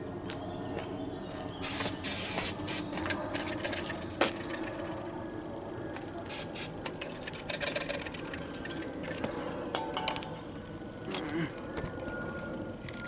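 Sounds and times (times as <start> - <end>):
clicks and scraping of parts: 2.4 - 4.9, 6.3 - 10.3.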